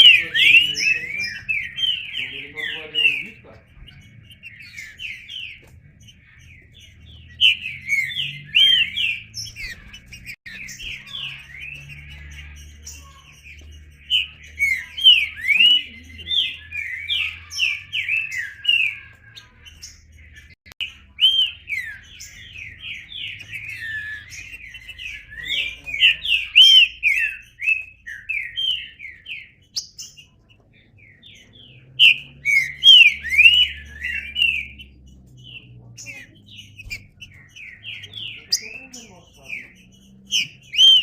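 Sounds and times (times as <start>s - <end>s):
bird singing whistled phrases: 0.0s - 12.2s, 20.4s - 30.4s, 31.1s - 41.0s.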